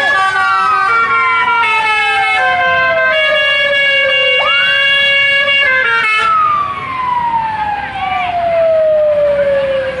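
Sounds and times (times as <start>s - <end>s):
bus air horn playing chords: 0.1s - 6.3s.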